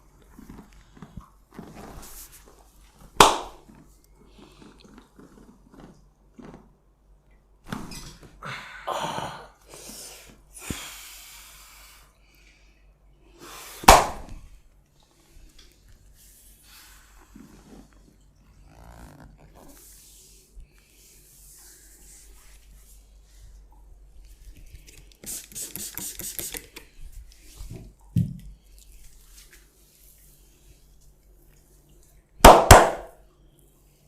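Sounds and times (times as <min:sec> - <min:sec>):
hands rustling on skin and cloth: 0:00.0 - 0:06.6, 0:28.6 - 0:31.8
hand slaps on skin: 0:03.2 - 0:03.6, 0:13.8 - 0:14.4, 0:32.5 - 0:33.1.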